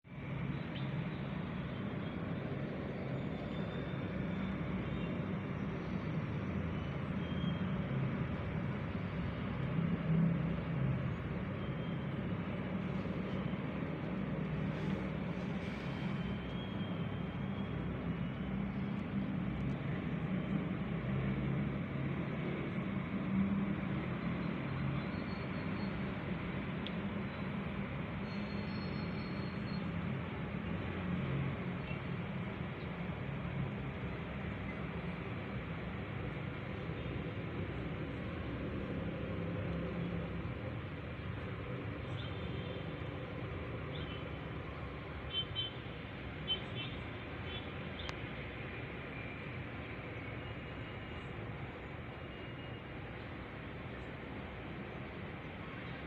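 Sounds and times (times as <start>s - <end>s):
road traffic rumble: 0.0s - 56.0s.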